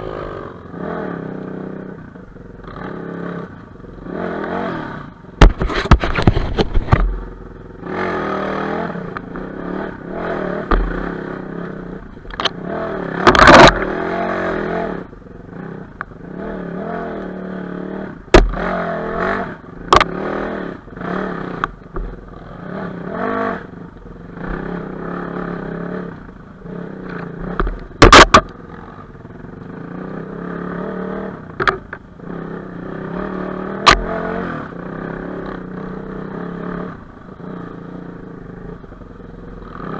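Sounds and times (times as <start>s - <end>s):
motorcycle engine revving: 0.0s - 39.9s
sharp knocks and clatter: 5.4s - 7.2s, 10.6s - 11.0s, 13.2s - 13.9s, 18.3s - 18.7s, 27.1s - 28.5s, 31.6s - 32.0s.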